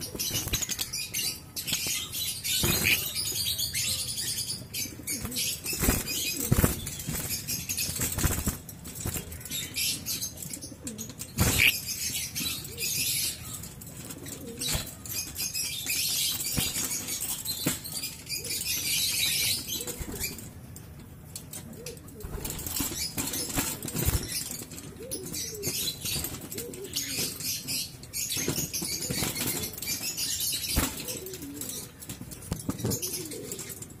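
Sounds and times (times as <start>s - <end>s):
high chattering bird calls: 0.0s - 20.5s, 22.4s - 32.0s
birds flapping wings: 5.2s - 9.6s, 11.2s - 11.8s, 22.2s - 27.4s, 28.4s - 33.8s.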